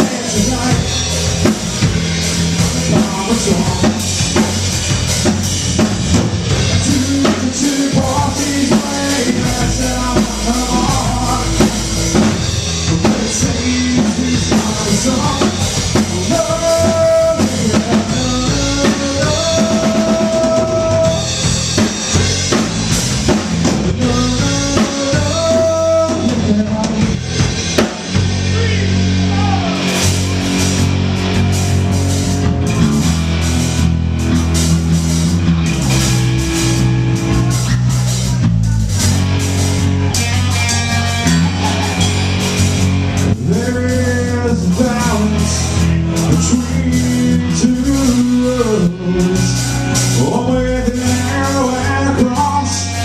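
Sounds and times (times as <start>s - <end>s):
drum kit and cymbals: 0.0s - 53.0s
heavy bass line: 0.0s - 53.0s
electric guitar melody notes: 39.0s - 53.0s.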